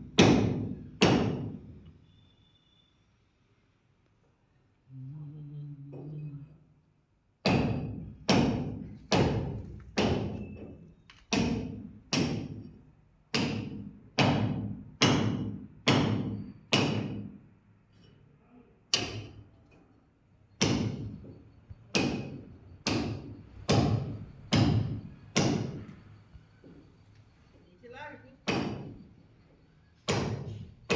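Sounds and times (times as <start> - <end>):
hammer striking: 0.0 - 1.8, 7.4 - 12.7, 13.3 - 17.4, 18.9 - 19.4, 20.6 - 26.0, 28.4 - 29.1, 30.0 - 30.9.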